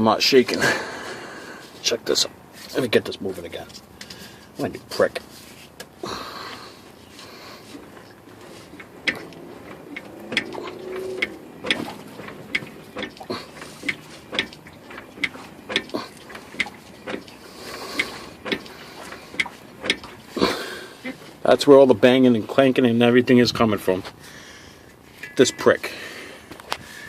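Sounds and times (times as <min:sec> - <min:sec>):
metal clanking: 0:07.8 - 0:21.5, 0:25.0 - 0:27.0.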